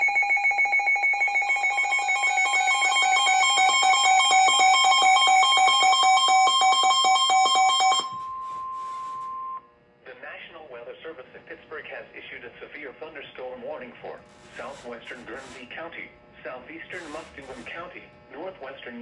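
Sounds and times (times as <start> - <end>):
steady warning alarm tone: 0.0 - 9.7, 14.3 - 15.8, 16.8 - 18.0.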